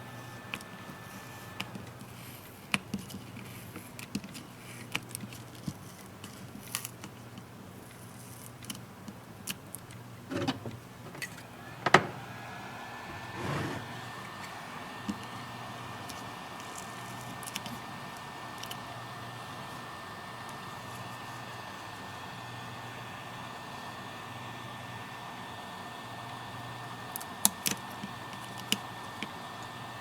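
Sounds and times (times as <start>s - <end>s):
steady low hum: 10.1s - 25.4s.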